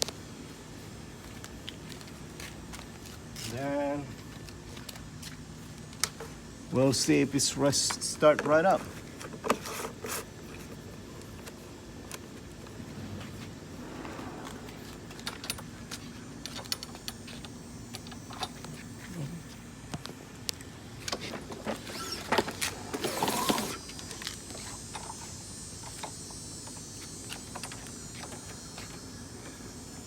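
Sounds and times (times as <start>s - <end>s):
clicks and knocks of mower handling: 7.8s - 10.8s
rustling scrape: 12.7s - 16.1s
faint high hiss: 12.7s - 19.7s.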